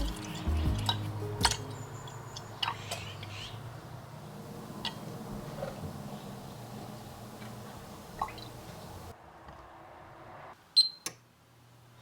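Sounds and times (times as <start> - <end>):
background music: 0.0 - 2.5.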